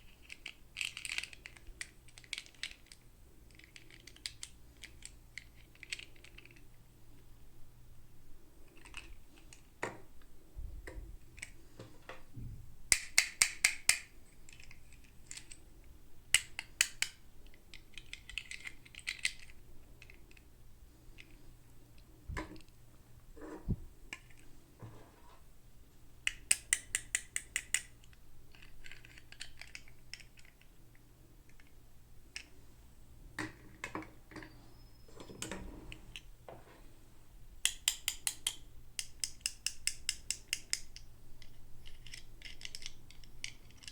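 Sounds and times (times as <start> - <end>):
sharp clicks of toy packaging: 0.1 - 6.6, 16.3 - 20.4.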